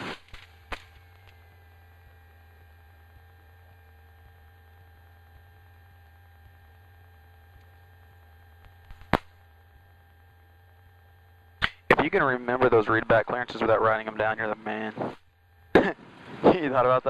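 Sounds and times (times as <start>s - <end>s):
low electrical hum: 0.0s - 17.0s
faint steady tones: 0.4s - 17.0s.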